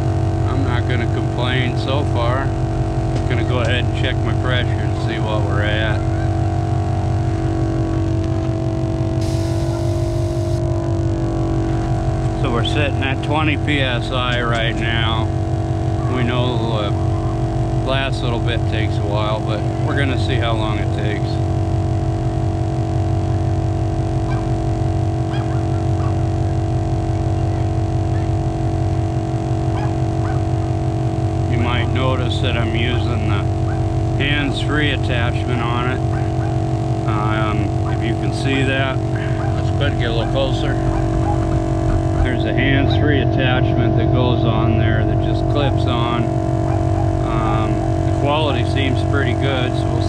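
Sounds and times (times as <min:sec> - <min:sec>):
air compressor running: 0:00.0 - 0:50.0
air hissing: 0:09.2 - 0:10.6.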